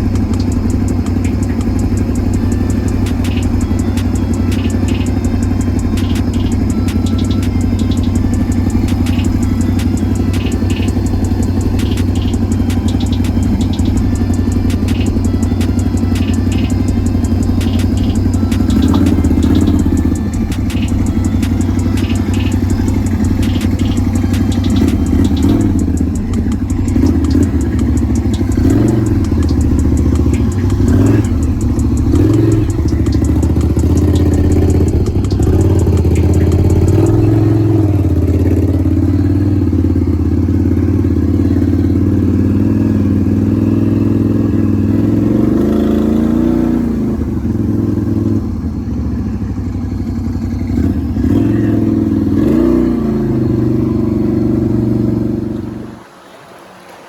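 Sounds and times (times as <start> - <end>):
sharp clattering clicks: 0.0 - 37.5
atv engine running: 0.0 - 56.2.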